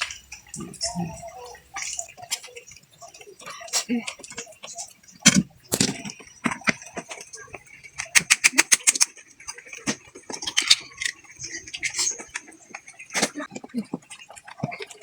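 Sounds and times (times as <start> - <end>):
shells clicking and knocking: 8.0 - 11.3.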